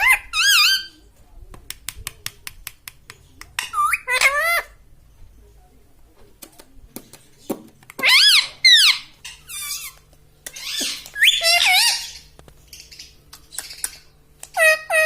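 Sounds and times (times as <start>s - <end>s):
parrot squeaky calls: 0.0s - 0.9s, 3.6s - 4.8s, 8.0s - 15.0s.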